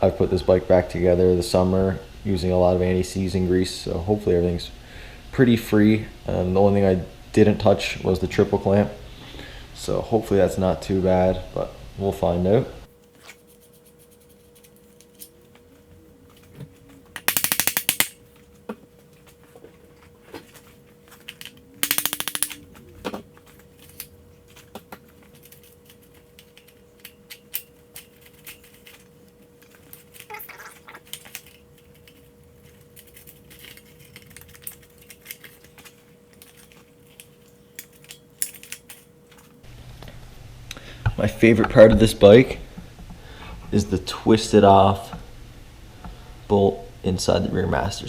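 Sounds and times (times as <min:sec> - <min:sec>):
faint steady hum: 0:00.0 - 0:48.0
metal tools clinking: 0:14.4 - 0:39.7
rapid rattling clicks of tool: 0:17.1 - 0:18.2, 0:21.2 - 0:39.6.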